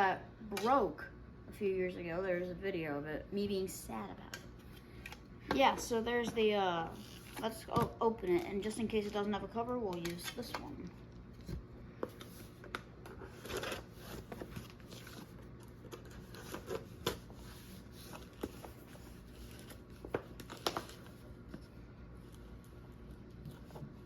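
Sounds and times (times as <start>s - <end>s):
packaging rustling and tearing: 12.2s - 21.2s.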